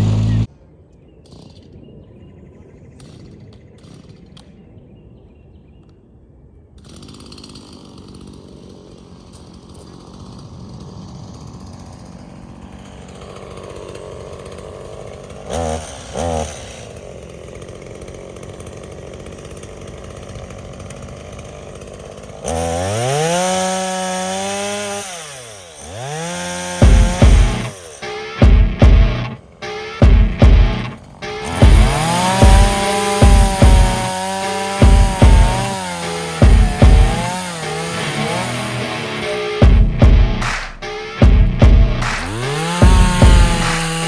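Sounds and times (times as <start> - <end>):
chainsaw running: 0.0 - 0.5, 6.8 - 44.0
chainsaw throttle blips: 0.0 - 0.5, 6.9 - 44.0.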